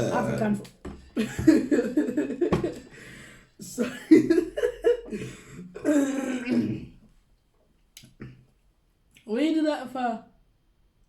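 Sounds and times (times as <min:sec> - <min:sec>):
people laughing: 0:01.2 - 0:06.8.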